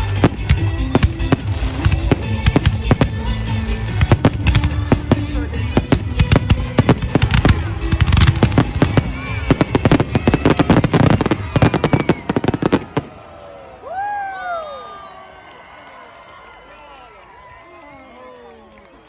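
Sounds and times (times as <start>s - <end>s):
fireworks bangs and crackles: 0.0s - 13.3s.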